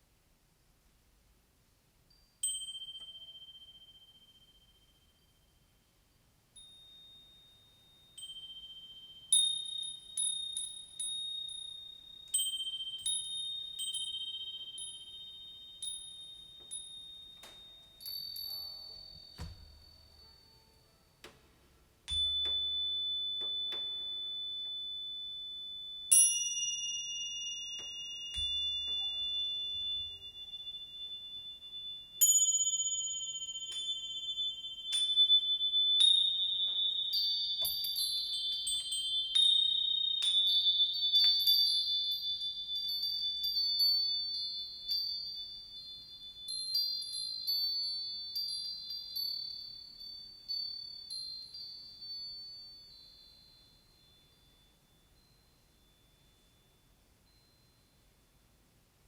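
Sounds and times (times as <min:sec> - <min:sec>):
wind chimes ringing: 0:02.1 - 0:58.6.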